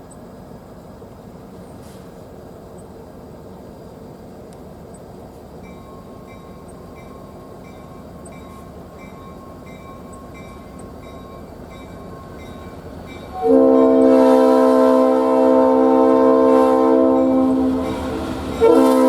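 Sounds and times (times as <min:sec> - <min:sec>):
diesel train rumble: 0:00.0 - 0:19.0
multi-chime train air horn: 0:13.2 - 0:19.0.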